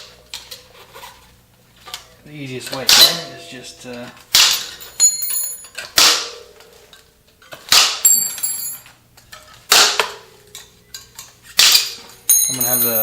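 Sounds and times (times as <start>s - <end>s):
high ringing of freed spoke: 12.3s - 13.0s.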